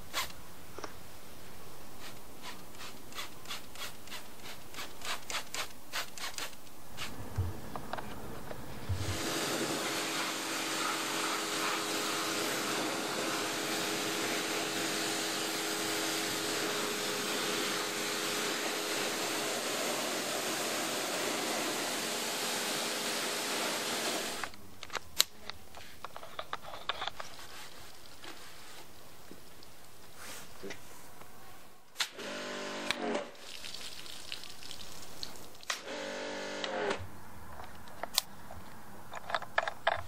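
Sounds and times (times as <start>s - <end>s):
pressure washer spraying: 2.0s - 7.2s, 9.0s - 24.4s.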